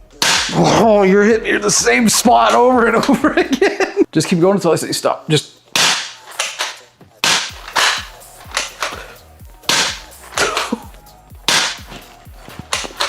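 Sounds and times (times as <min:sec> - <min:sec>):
spring-air gun pops: 0:00.2 - 0:00.6, 0:05.8 - 0:10.8, 0:11.5 - 0:12.0, 0:12.6 - 0:13.0.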